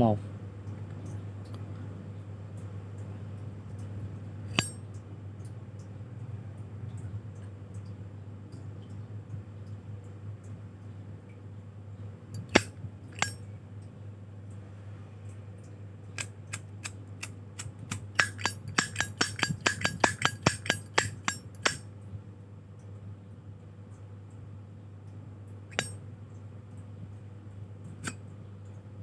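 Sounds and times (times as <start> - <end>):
lighters clicking metallically: 4.5 - 4.8, 12.4 - 13.4, 16.2 - 21.8, 25.7 - 26.0.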